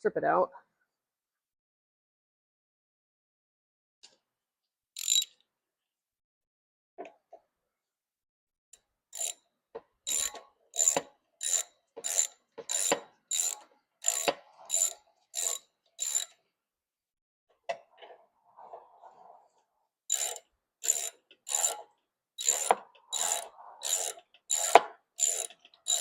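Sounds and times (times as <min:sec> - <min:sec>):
ratchet wrench clicking: 0:05.0 - 0:05.3, 0:09.2 - 0:09.4, 0:10.1 - 0:16.4, 0:20.1 - 0:21.8, 0:22.4 - 0:26.0.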